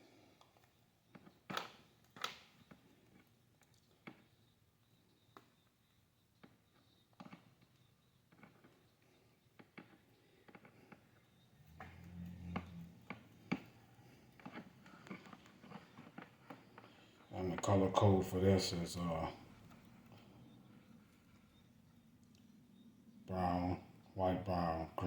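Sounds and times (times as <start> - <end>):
wire clicks and rustles: 0.4 - 4.5, 6.4 - 18.1
low hum: 11.6 - 14.2.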